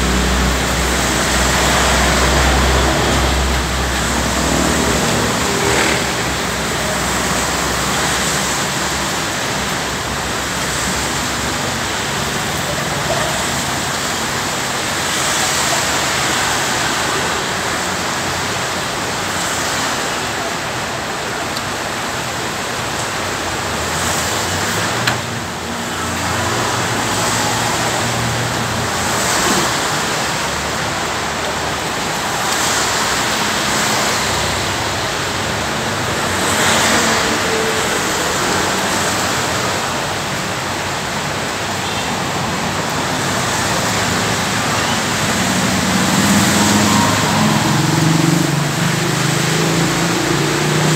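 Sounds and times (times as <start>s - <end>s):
heavy rain: 0.0s - 50.9s.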